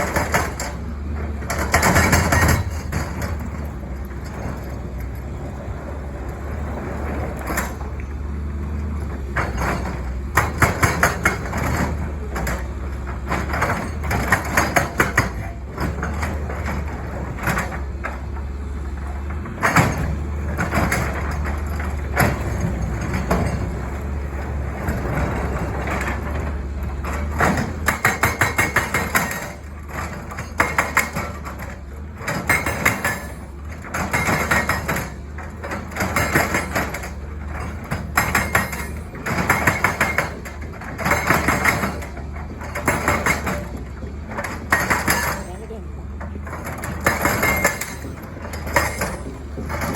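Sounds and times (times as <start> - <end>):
hydraulic breaker hammering: 0.0 - 3.5, 9.4 - 17.9, 24.7 - 49.9
excavator diesel engine running: 0.0 - 49.9.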